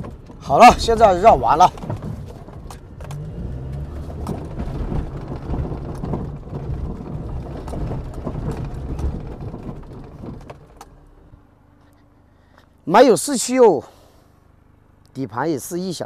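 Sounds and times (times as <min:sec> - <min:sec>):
chassis knocking and rattling: 0:00.0 - 0:11.5
engine and tyre rumble: 0:00.0 - 0:16.0.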